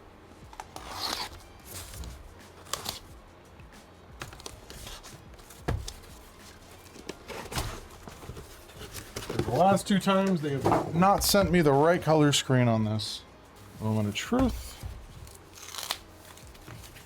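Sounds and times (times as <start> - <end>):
packaging rustling: 4.2 - 9.9.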